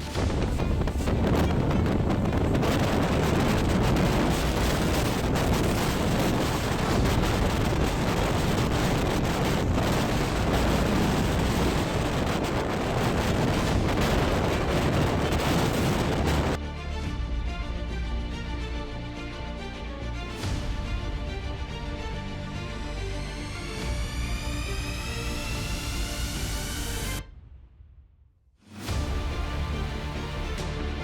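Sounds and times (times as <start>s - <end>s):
strong wind buffeting microphone: 0.0s - 16.6s
background music: 0.0s - 27.6s, 28.6s - 31.0s.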